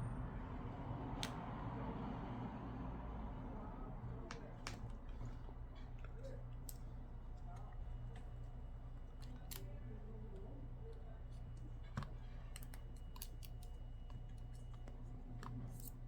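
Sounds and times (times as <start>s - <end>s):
light clicks and taps: 4.2s - 5.4s.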